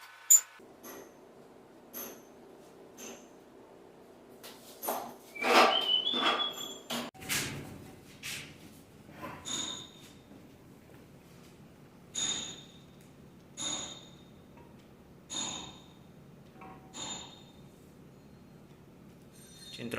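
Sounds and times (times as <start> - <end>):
metal tools clinking and tapping: 0.3 - 1.0, 9.2 - 10.2, 12.1 - 17.6, 19.2 - 19.9
short squeak: 5.3 - 7.0, 9.4 - 10.1.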